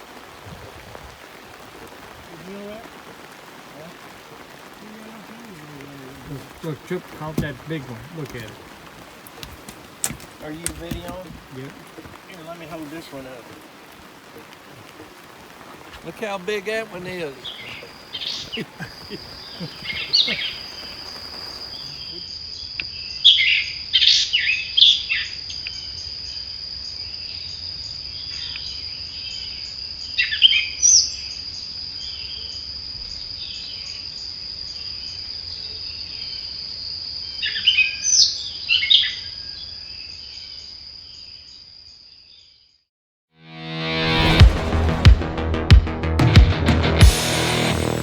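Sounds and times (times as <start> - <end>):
birds chirping: 1.2 - 24.5.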